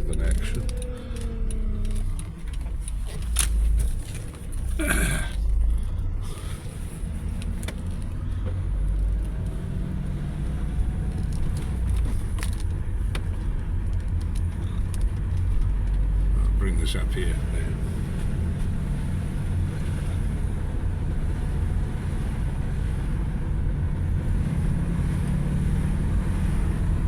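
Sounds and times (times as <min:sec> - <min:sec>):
car engine and road rumble: 0:00.0 - 0:27.0.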